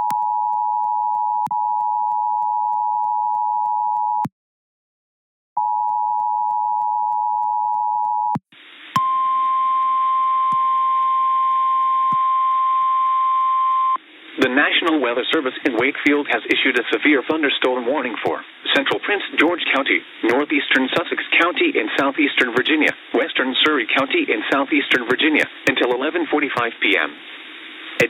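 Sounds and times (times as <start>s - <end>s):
radio static: 14.0s - 28.0s.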